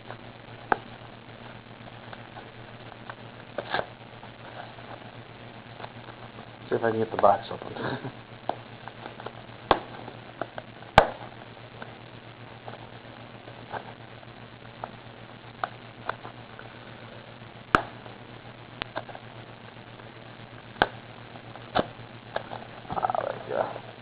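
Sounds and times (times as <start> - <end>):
cardboard snaps: 10.5 - 11.3.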